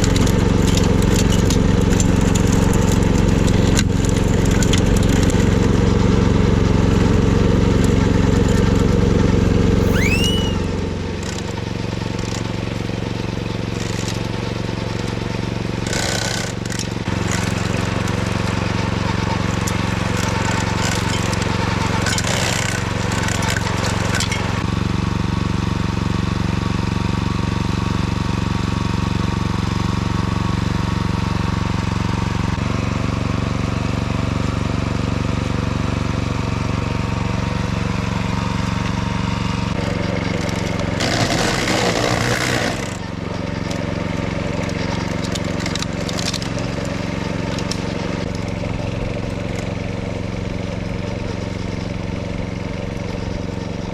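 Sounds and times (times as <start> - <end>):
mower engine running: 16.6 - 53.9.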